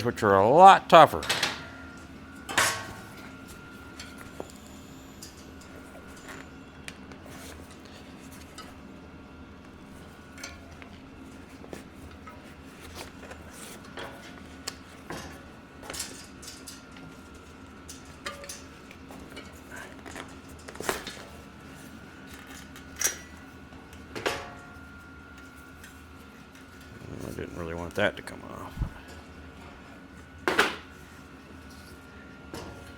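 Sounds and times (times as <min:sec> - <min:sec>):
faint steady hum: 0:24.2 - 0:30.3.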